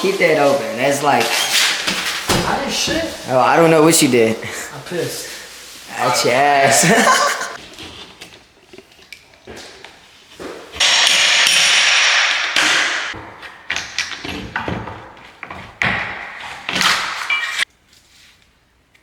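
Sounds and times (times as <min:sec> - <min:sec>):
knocks and scraping: 0:01.0 - 0:03.6, 0:10.3 - 0:17.7.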